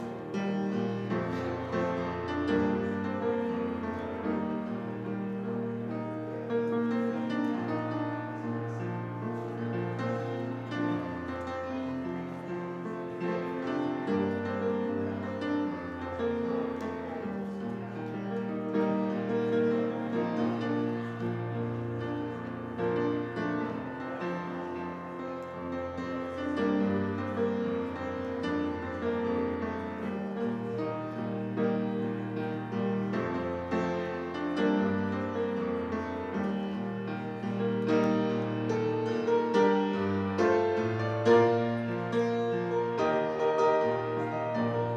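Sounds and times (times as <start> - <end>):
slow piano music: 0.0 - 44.9.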